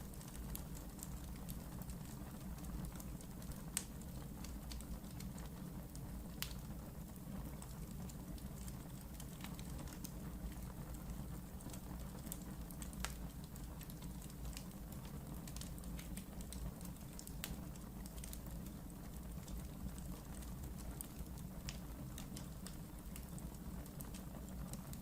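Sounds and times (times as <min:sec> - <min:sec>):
low rumble of burning: 0:00.0 - 0:25.0
wood fire crackling and popping: 0:00.0 - 0:25.0.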